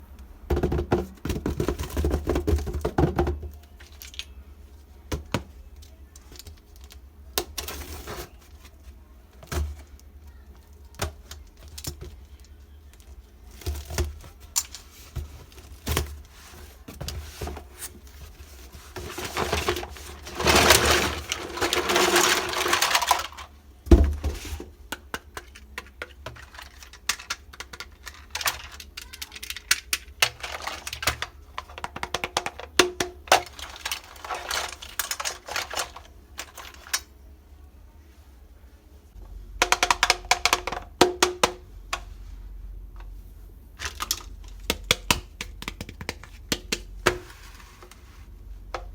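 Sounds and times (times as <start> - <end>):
rustling and scraping: 1.0 - 32.6, 33.2 - 37.1, 46.1 - 48.9.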